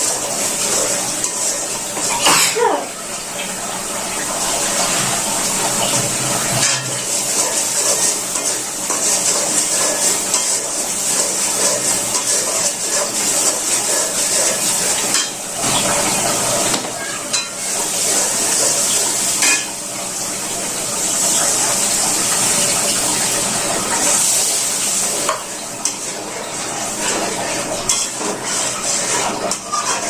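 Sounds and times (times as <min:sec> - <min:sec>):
food sizzling in a pan: 0:00.0 - 0:30.0
metal spoon scraping a pan: 0:05.9 - 0:15.9, 0:19.4 - 0:19.8, 0:25.2 - 0:30.0.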